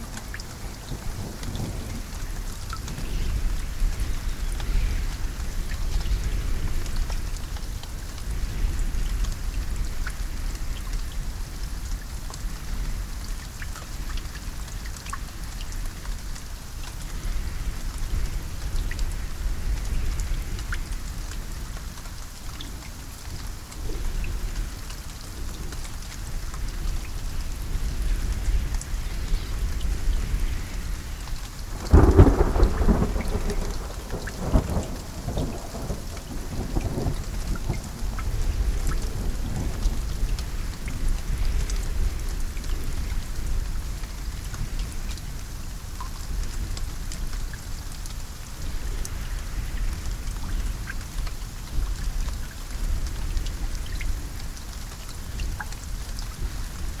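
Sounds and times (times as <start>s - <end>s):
low thunder rumbling: 0.0s - 11.6s, 25.3s - 44.3s
steady rain: 0.0s - 57.0s
loud thunderclap: 31.7s - 40.1s.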